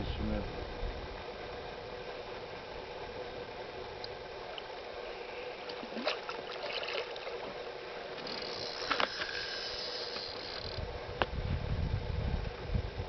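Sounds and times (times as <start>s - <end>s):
water sloshing against boat: 1.2s - 10.8s
sharp splashes: 5.7s - 7.4s.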